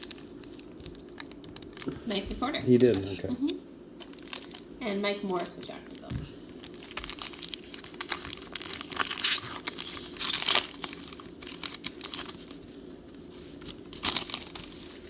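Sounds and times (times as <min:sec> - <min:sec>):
card packs tearing open: 0:00.0 - 0:02.1, 0:04.0 - 0:04.7, 0:06.6 - 0:12.6, 0:13.6 - 0:15.0
wrappers crinkling: 0:00.0 - 0:03.3, 0:04.0 - 0:15.0.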